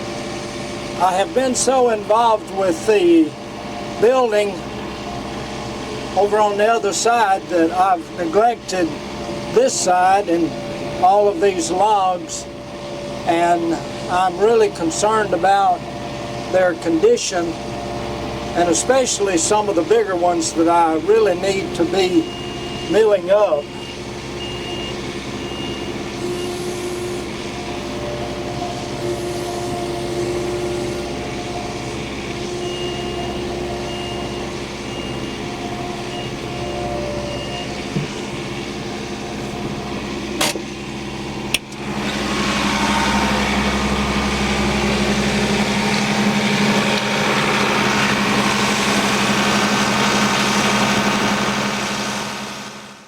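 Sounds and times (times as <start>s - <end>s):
engine running: 0.0s - 53.0s
high beep: 36.0s - 37.8s.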